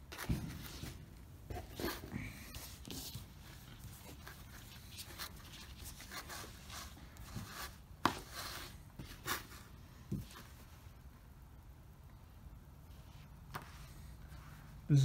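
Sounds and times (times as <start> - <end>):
t-shirt rustling: 0.0 - 11.1.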